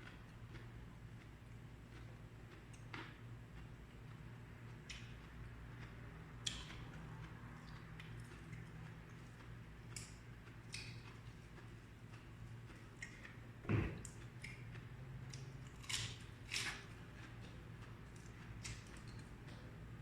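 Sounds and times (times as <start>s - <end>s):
dull thump: 13.6s - 14.0s
crisp vegetable crunches: 15.3s - 19.3s.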